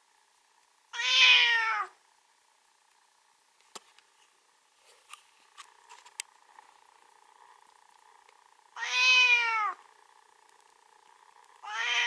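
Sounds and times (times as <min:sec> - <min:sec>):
faint clicks: 0:00.0 - 0:01.0, 0:01.9 - 0:08.6, 0:09.8 - 0:11.7
cat meowing: 0:00.9 - 0:02.0, 0:08.8 - 0:09.8, 0:11.6 - 0:12.0.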